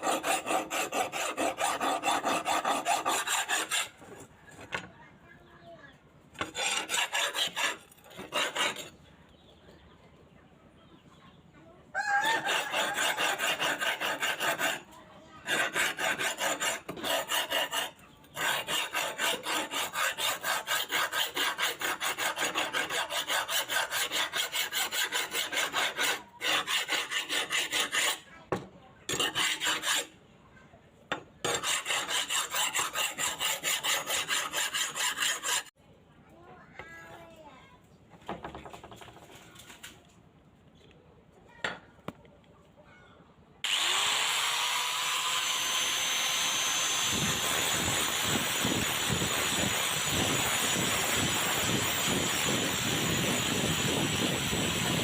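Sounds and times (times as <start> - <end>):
rasping on steel blade: 0.0 - 4.2, 6.4 - 9.0, 12.2 - 28.3, 29.1 - 30.2, 31.4 - 35.8, 46.4 - 55.0.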